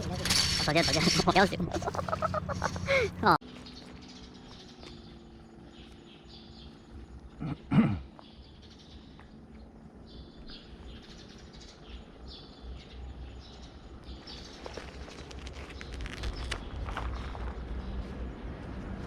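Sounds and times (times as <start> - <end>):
low steady rumble: 0.0 - 3.4
birds chirping: 0.0 - 19.0.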